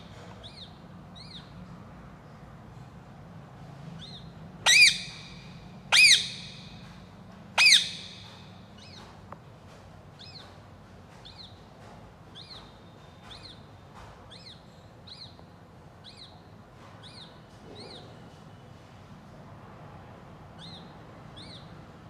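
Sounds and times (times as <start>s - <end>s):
bird chirping: 0.1s - 1.6s, 4.0s - 6.9s, 7.6s - 9.1s, 12.3s - 13.7s, 14.3s - 18.2s, 20.6s - 21.8s.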